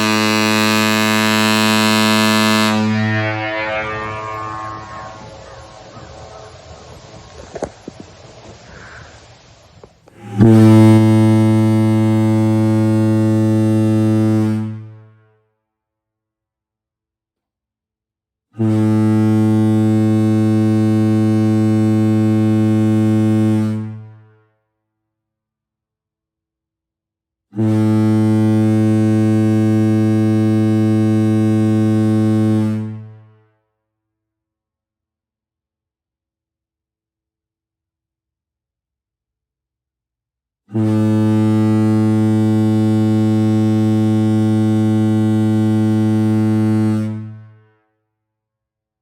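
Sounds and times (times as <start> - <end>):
ship horn blast: 0.0 - 7.8, 10.1 - 15.4, 18.6 - 24.4, 27.6 - 33.4, 40.7 - 47.7.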